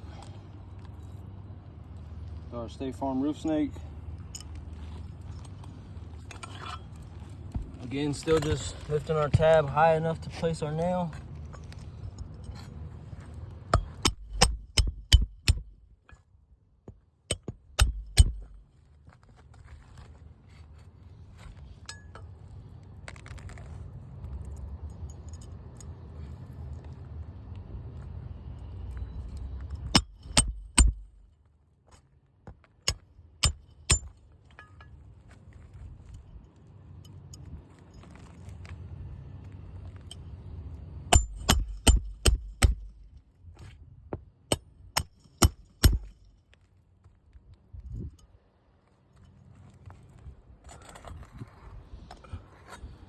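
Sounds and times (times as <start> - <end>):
metallic clinks of nails and tools: 4.2 - 7.3, 8.1 - 9.2, 21.8 - 27.0, 32.9 - 35.2, 39.9 - 40.4, 41.1 - 43.1
hammer striking roofing nails: 13.8 - 15.7, 17.3 - 18.6, 29.9 - 31.1, 41.1 - 43.0, 44.5 - 46.2.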